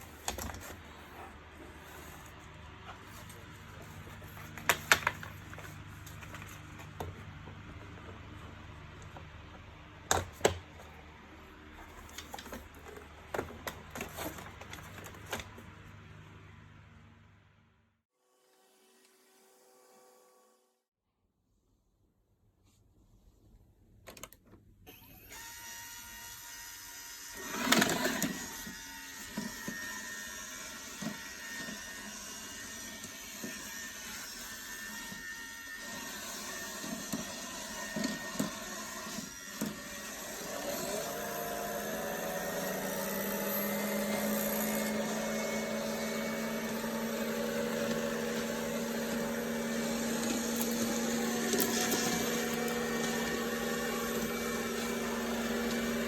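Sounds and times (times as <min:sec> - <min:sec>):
robot vacuum running: 0:35.8 - 0:56.0
motor spinning up with whine: 0:35.9 - 0:56.0.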